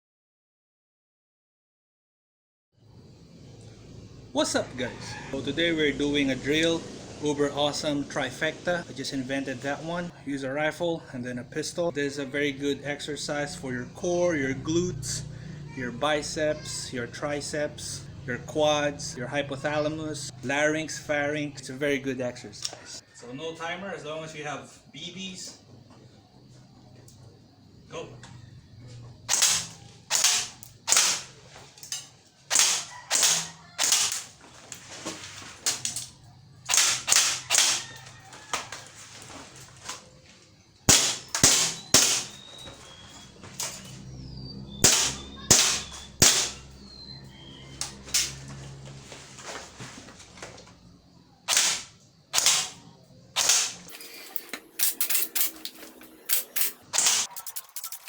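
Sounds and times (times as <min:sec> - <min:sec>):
airsoft gun shots: 0:29.3 - 0:31.3, 0:32.5 - 0:34.3, 0:36.7 - 0:37.8, 0:40.9 - 0:42.4, 0:44.8 - 0:46.6, 0:51.5 - 0:52.8, 0:53.4 - 0:53.9, 0:56.9 - 0:57.3.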